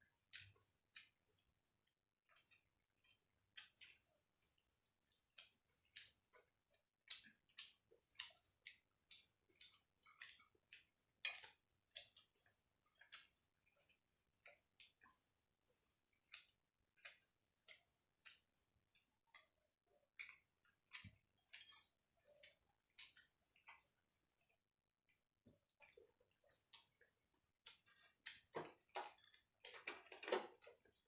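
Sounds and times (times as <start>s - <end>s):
people chewing and smacking: 0.0s - 31.0s.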